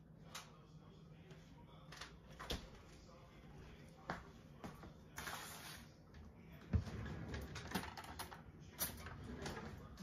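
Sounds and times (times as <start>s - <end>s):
kitchen items clicking and knocking: 7.4s - 9.6s.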